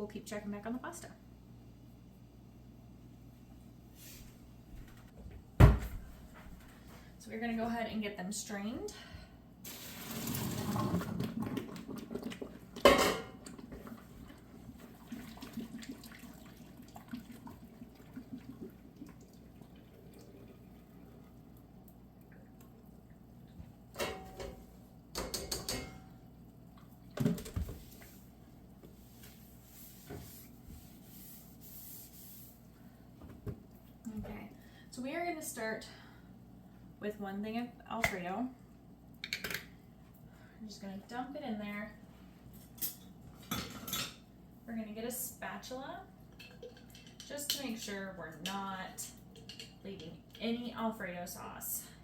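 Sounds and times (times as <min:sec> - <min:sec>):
hot water pouring: 0:09.6 - 0:23.6
pot and dishes clattering: 0:12.8 - 0:13.6, 0:24.0 - 0:26.1, 0:43.4 - 0:44.2, 0:46.3 - 0:47.6.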